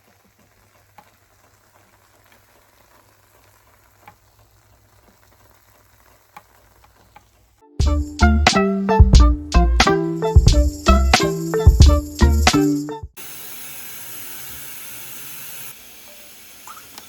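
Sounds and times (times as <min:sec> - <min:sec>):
food sizzling in a pan: 0:00.0 - 0:07.5, 0:13.2 - 0:17.0.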